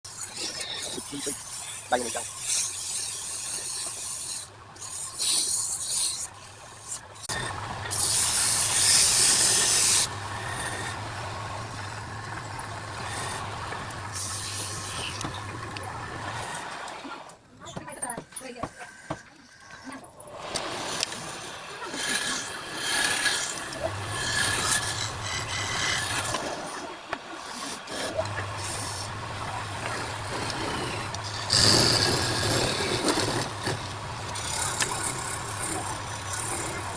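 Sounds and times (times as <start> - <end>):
lathe motor humming: 7.3 - 17.0, 20.5 - 36.9
turning tool scraping wood: 7.3 - 17.0, 17.6 - 36.9.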